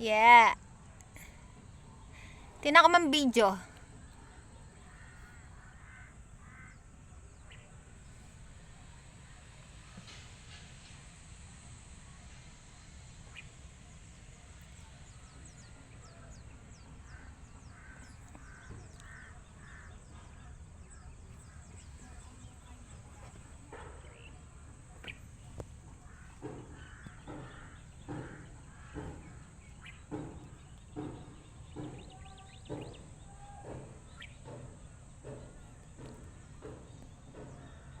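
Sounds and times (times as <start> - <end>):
bird harsh calls: 15.0 - 38.0.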